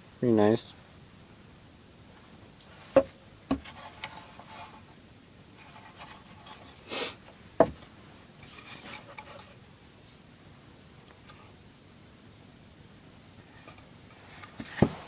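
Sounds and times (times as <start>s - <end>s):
rustling: 2.1s - 9.6s
sharp knocks on wood: 7.6s - 7.8s.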